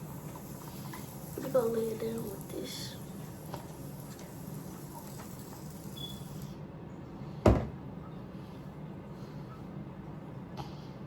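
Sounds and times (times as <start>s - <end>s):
low background hum: 0.0s - 11.0s
sharp thump on hard surface: 7.4s - 7.7s.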